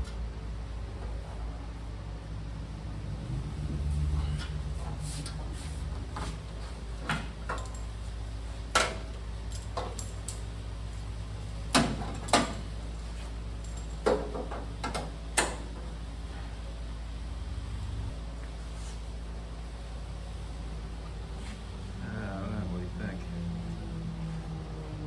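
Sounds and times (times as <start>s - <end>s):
steady low hum: 0.0s - 25.0s
metallic clinks and knocks: 7.4s - 8.0s, 13.6s - 14.4s.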